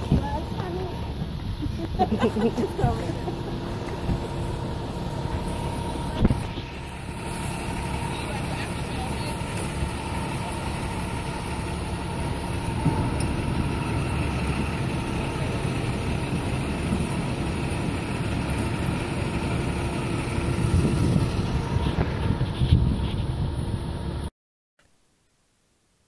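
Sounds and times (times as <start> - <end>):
vehicle engine running: 0.0 - 24.3.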